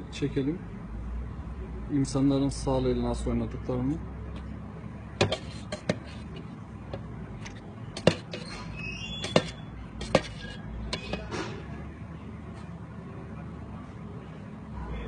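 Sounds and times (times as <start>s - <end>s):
sharp knocks and clicks: 8.0s - 8.6s, 9.2s - 11.3s.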